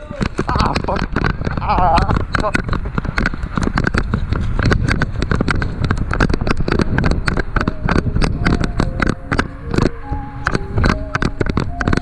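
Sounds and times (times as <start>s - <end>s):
sharp clicks and cracks: 0.0s - 12.0s
steady music tones: 6.6s - 12.0s.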